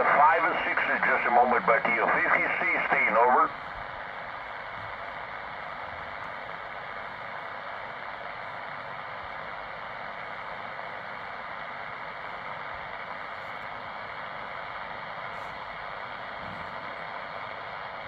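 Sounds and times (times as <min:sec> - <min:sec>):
radio receiver hiss: 0:00.0 - 0:03.7.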